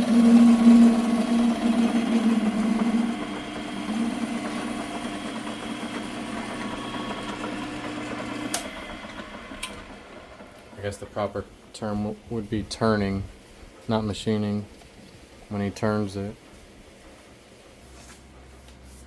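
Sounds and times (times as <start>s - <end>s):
lathe stopping click: 0.0s - 10.7s
metal lathe motor hum: 0.0s - 10.8s.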